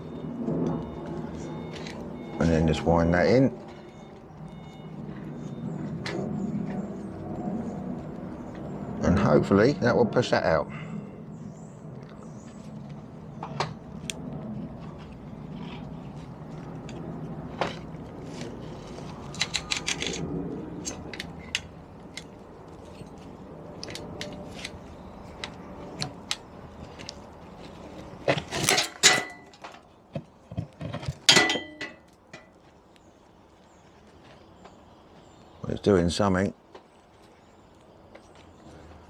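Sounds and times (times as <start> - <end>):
metal clicks: 19.1 - 22.3.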